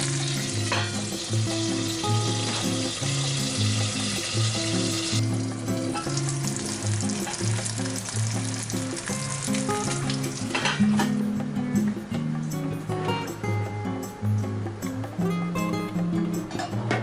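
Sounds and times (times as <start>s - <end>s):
food sizzling in a pan: 0.0s - 10.9s
background music: 0.0s - 17.0s.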